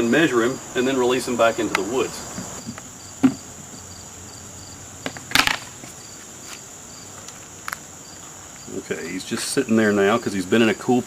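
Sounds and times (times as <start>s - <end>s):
crickets chirring: 0.0s - 11.0s
sharp knock: 3.2s - 3.4s.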